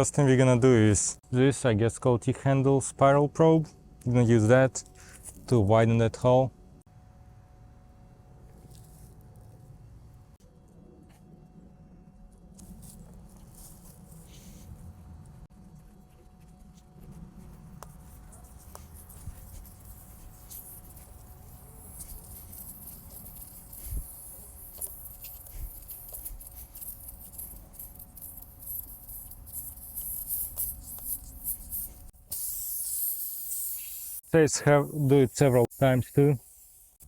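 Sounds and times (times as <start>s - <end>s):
rubber scraping and ticking: 16.8s - 32.2s
air hissing: 18.0s - 37.0s.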